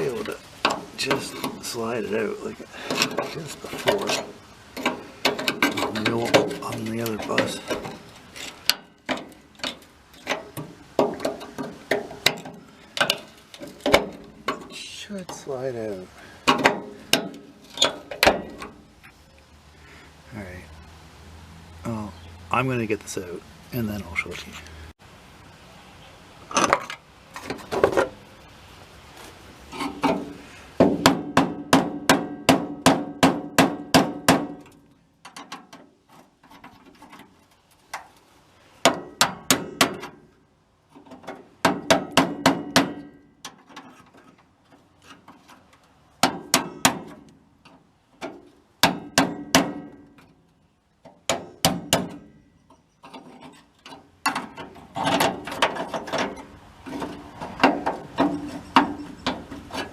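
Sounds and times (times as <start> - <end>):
hammer striking metal hinge: 16.5 - 18.8, 30.0 - 34.7, 38.8 - 40.2, 41.2 - 43.6, 46.2 - 47.3, 48.2 - 50.1, 51.1 - 52.4.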